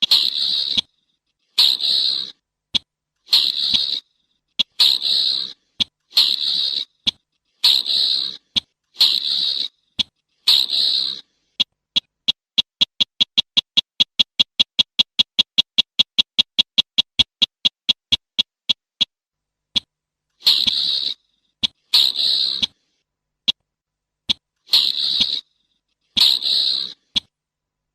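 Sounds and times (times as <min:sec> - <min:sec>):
bird sharp ticks: 0:00.0 - 0:19.2, 0:19.8 - 0:22.8, 0:24.3 - 0:27.3.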